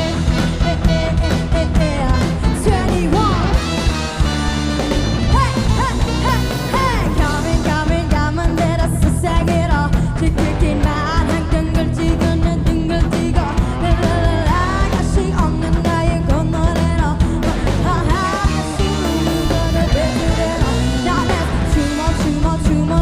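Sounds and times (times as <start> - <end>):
live band playing pop: 0.0 - 23.0
person singing: 5.2 - 23.0.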